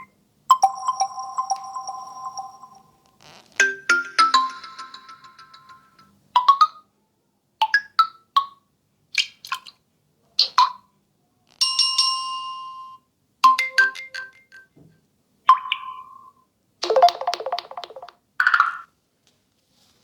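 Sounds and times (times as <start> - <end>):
phone ringtone chimes: 0.5 - 3.0, 3.6 - 6.0.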